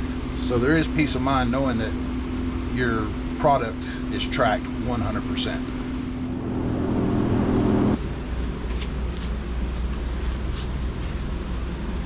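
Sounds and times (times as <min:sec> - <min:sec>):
engine-like drone: 0:00.0 - 0:10.4
low steady hum: 0:01.5 - 0:10.4.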